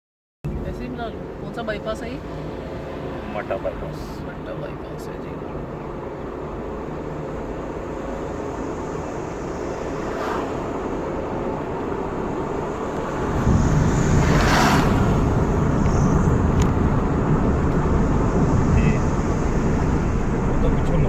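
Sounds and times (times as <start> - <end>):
car engine and tyre rumble: 0.5 - 21.0
brief rushing sound: 8.9 - 11.2, 12.7 - 21.0.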